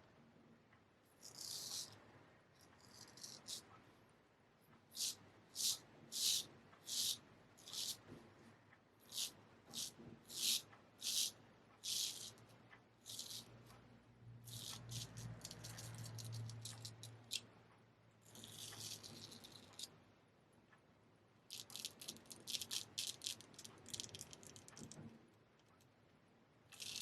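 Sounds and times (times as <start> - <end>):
razor scraping stubble: 1.2 - 1.9.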